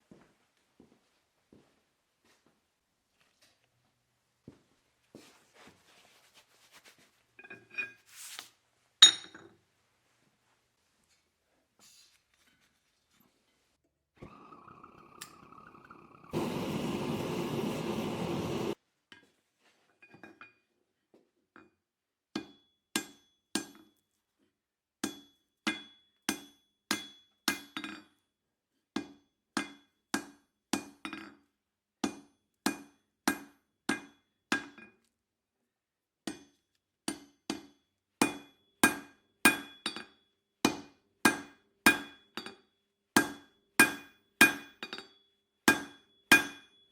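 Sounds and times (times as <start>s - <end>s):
loud steady rushing noise: 16.3s - 18.8s
hammer striking steel on anvil: 22.4s - 23.8s, 37.1s - 42.6s, 43.2s - 46.9s.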